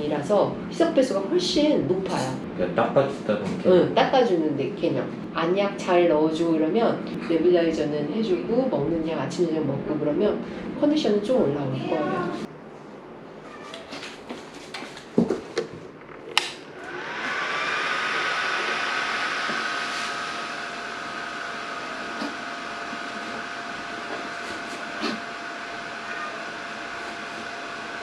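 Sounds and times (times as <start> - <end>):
nebulizer motor whine: 16.0 - 28.0.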